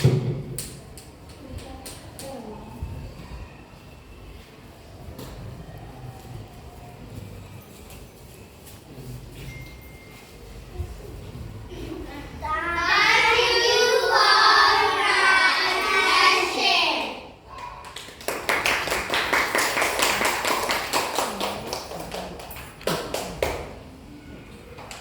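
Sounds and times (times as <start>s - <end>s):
children calling out together: 12.4s - 17.8s
applause: 17.6s - 23.6s.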